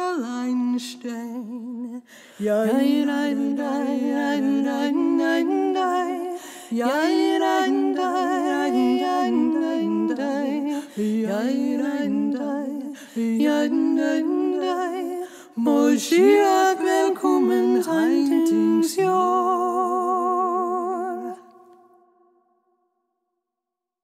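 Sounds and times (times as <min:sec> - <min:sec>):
person singing wordless melody: 0:00.0 - 0:22.0
singer breathing: 0:02.0 - 0:02.5, 0:06.4 - 0:06.7, 0:10.7 - 0:11.2, 0:12.9 - 0:13.2, 0:15.2 - 0:15.6.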